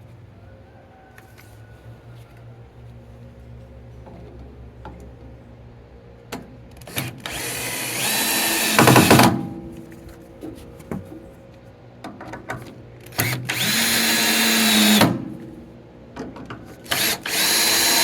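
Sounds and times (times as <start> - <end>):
screw gun whining: 6.8 - 9.4, 13.1 - 15.2, 16.8 - 18.0.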